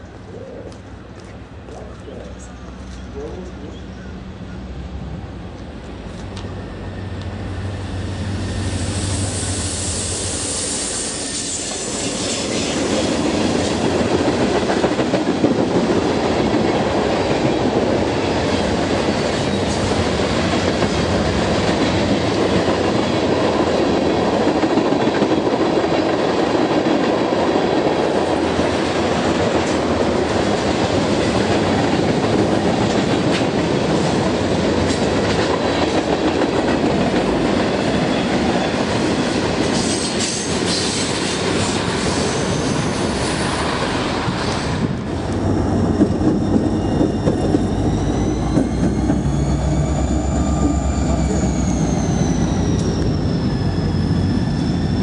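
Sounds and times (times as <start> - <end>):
train rumbling past: 0.0 - 55.0.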